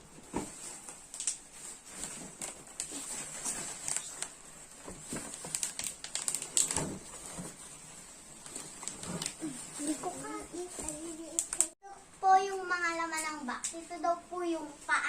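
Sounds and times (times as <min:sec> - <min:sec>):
packaging rustling: 0:00.2 - 0:11.8.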